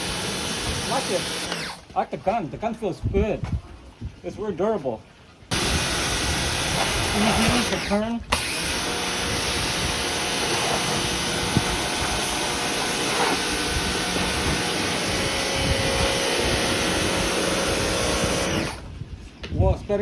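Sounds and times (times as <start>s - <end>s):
pressure washer motor humming: 0.0s - 1.8s, 5.5s - 18.9s
water jet hissing: 0.0s - 1.9s, 5.5s - 18.9s.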